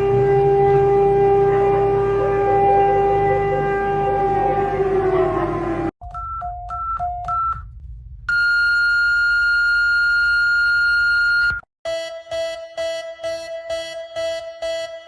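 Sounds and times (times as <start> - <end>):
steady high alarm tone: 11.2 - 15.0.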